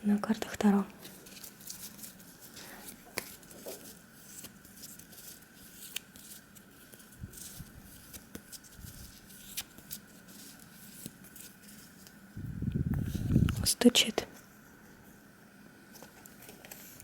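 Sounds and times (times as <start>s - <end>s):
low steady hum: 0.0s - 17.0s
cards tapping and rustling: 1.0s - 12.2s.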